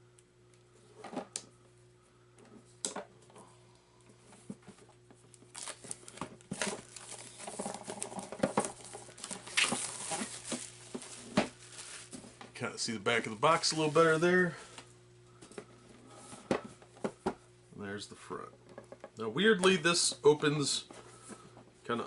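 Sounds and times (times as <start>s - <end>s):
crinkling: 4.4s - 14.9s
rustling: 5.5s - 12.4s.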